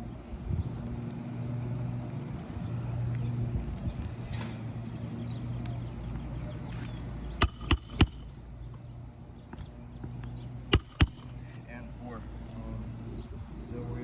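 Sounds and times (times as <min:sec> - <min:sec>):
steady low hum: 0:00.0 - 0:11.9
hammer blows on nail: 0:07.4 - 0:08.3, 0:10.8 - 0:11.4.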